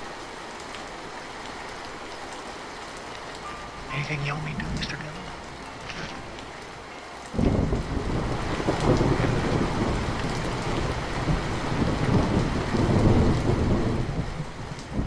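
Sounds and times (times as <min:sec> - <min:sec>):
rain: 0:00.0 - 0:15.0
thunder rumbling: 0:03.7 - 0:15.0.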